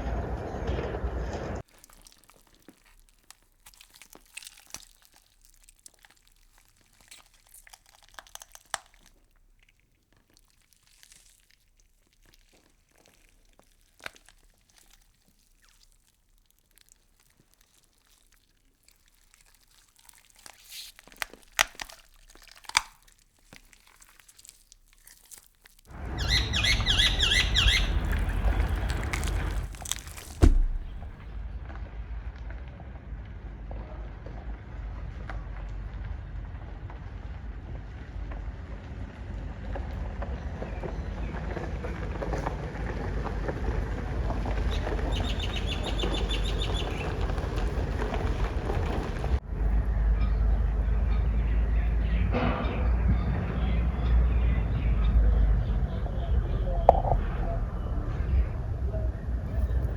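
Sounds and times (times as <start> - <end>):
faint crackles and clicks: 1.6 - 31.3, 39.7 - 49.4.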